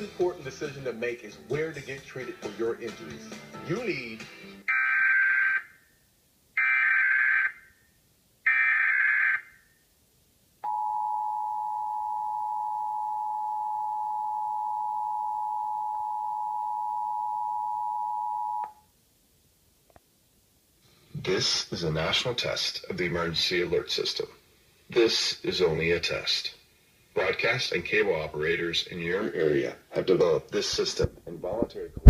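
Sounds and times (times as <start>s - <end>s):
two-tone attention signal: 10.6s - 18.7s.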